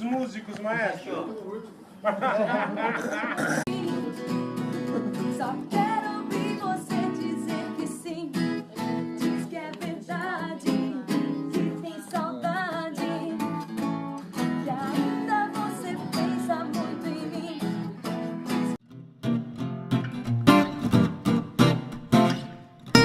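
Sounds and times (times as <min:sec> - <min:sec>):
person singing: 0:03.4 - 0:18.8
acoustic guitar strumming chords: 0:03.7 - 0:23.0.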